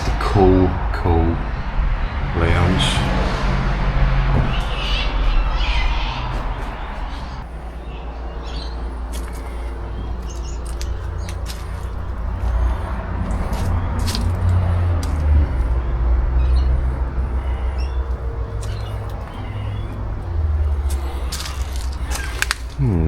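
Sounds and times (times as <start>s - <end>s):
small birds chirping: 0.0s - 23.0s
steady low rumble: 0.0s - 23.0s
sharp clicks and crackles: 20.9s - 22.8s.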